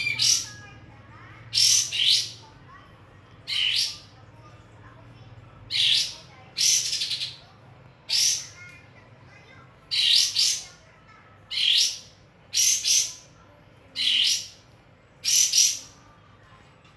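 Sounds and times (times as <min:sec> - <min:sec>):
bird calling harsh high phrases: 0:00.0 - 0:00.8, 0:01.4 - 0:02.5, 0:03.5 - 0:04.2, 0:05.7 - 0:07.5, 0:08.1 - 0:08.7, 0:09.9 - 0:10.8, 0:11.5 - 0:13.4, 0:14.0 - 0:14.6, 0:15.2 - 0:16.0.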